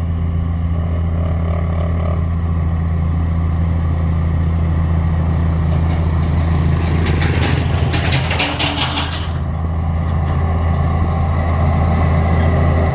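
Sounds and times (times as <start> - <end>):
diesel engine droning: 0.0 - 12.9
rapid clicking and rattling: 5.7 - 9.5.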